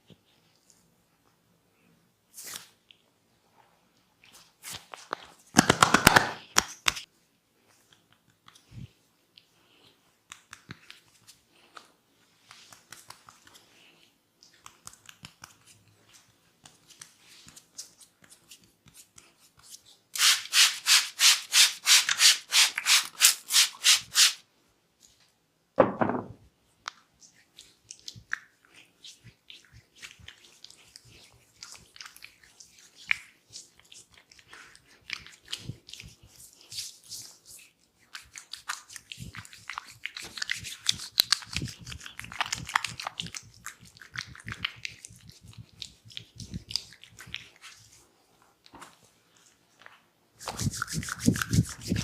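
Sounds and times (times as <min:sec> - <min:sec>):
hands rubbing over skin: 0:09.7 - 0:24.4, 0:50.4 - 0:52.0
dull thump: 0:25.8 - 0:26.4.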